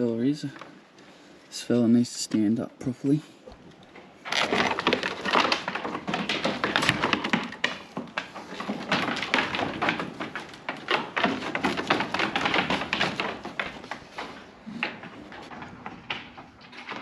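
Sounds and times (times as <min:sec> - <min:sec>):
sheep hooves clattering on hard floor: 0:03.8 - 0:17.0.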